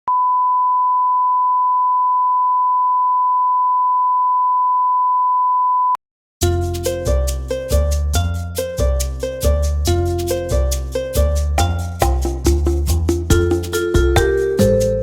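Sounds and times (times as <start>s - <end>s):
music: 6.4s - 15.0s.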